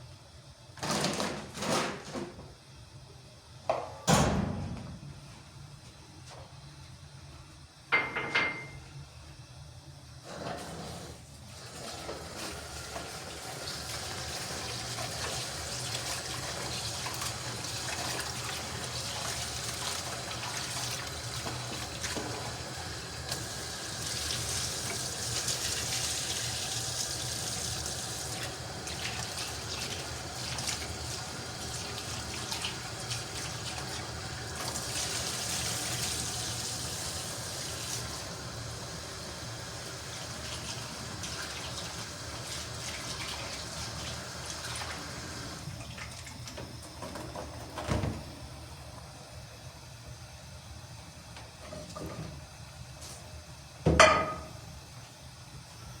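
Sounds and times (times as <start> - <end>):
water running: 11.6 - 48.4.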